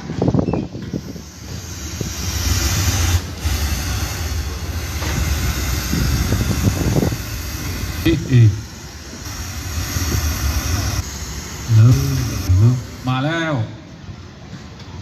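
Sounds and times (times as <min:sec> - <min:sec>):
wind blowing across microphone: 0:00.0 - 0:03.1, 0:05.9 - 0:08.4.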